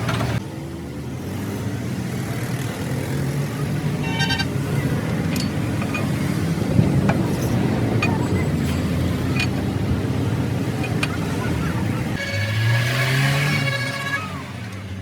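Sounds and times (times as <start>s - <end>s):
horn toot: 12.1s - 15.0s.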